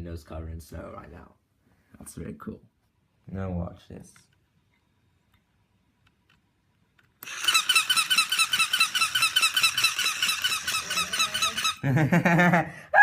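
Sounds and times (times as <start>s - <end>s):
rapid high squeaking: 7.2s - 11.8s.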